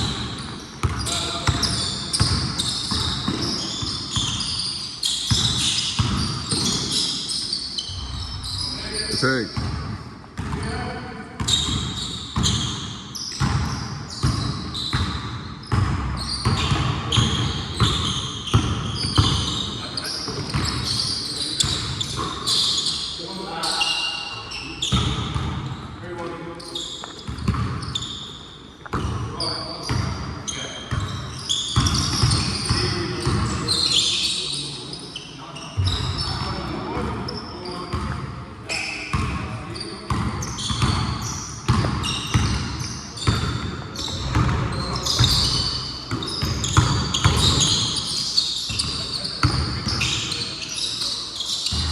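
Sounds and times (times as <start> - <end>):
basketball dribbling: 0.0 - 4.4, 5.3 - 7.0, 13.4 - 19.6, 27.3 - 27.8, 31.8 - 33.6, 40.1 - 48.0, 48.7 - 50.2
sneakers squeaking: 0.0 - 51.9.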